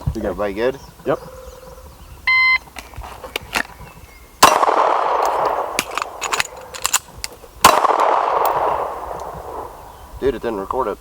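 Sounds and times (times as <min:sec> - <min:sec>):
gun reload clicks: 0:04.4 - 0:09.4
handgun shots echoing: 0:04.4 - 0:09.9.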